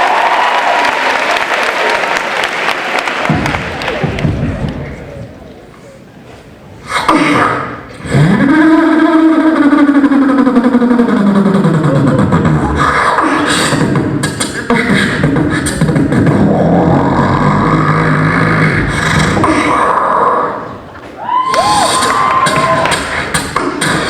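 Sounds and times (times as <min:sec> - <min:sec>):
person beatboxing: 0:06.8 - 0:20.8, 0:21.6 - 0:24.0.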